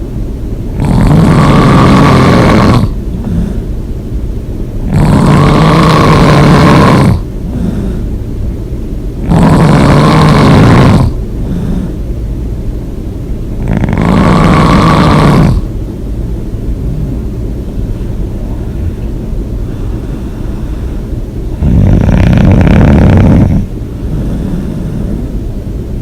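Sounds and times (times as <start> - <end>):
person snoring: 0.7 - 3.7, 4.8 - 8.1, 9.2 - 12.0, 13.6 - 15.7, 16.8 - 17.3, 19.7 - 25.3
breathing noise: 2.8 - 3.8, 6.4 - 8.2, 11.4 - 12.1, 16.8 - 25.4.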